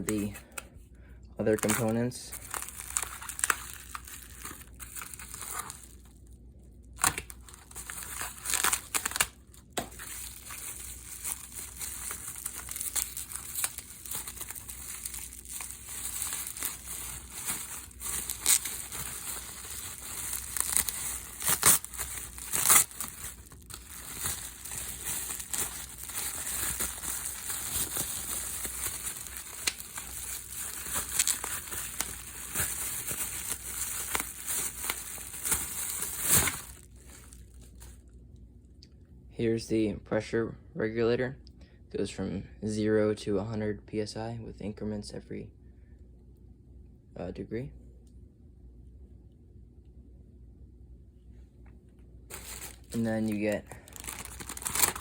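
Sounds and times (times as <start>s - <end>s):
plastic packaging crinkling: 0.0s - 0.6s, 1.4s - 6.2s, 7.0s - 38.0s, 52.3s - 55.0s.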